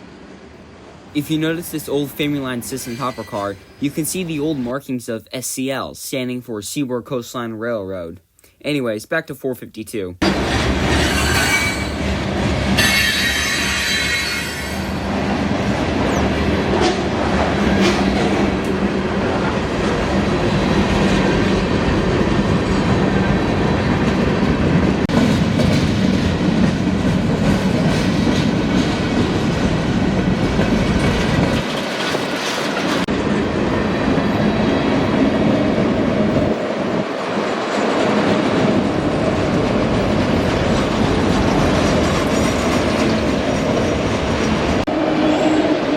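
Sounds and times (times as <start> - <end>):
high wheel squeal: 2.7 - 3.8, 10.9 - 12.0, 12.8 - 15.0
freight train wheels rumbling: 10.2 - 45.9.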